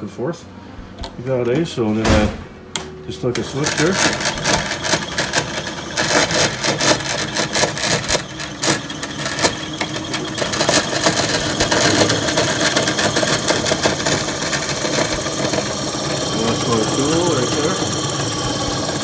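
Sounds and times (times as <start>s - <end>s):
lathe rattling clatter: 0.8s - 19.0s
electric motor whirring: 2.7s - 19.0s.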